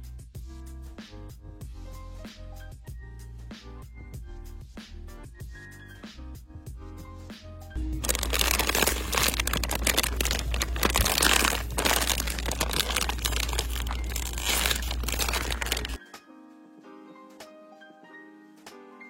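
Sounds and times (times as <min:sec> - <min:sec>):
loud crinkling and rustling: 0:08.0 - 0:16.0.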